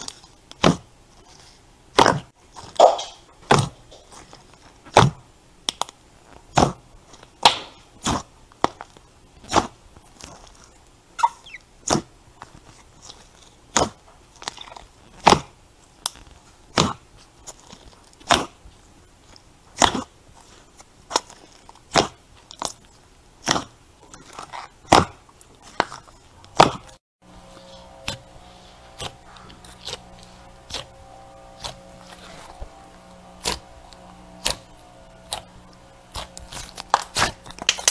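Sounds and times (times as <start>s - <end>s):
faint background tones: 27.2s - 37.9s
crunchy slime crackling pops: 29.0s - 37.9s.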